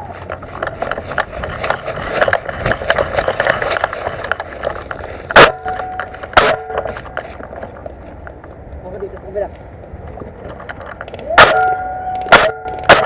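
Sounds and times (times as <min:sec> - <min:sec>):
small crackles and clicks: 0:00.0 - 0:13.0
airsoft gun shots: 0:05.4 - 0:06.9, 0:11.4 - 0:13.0.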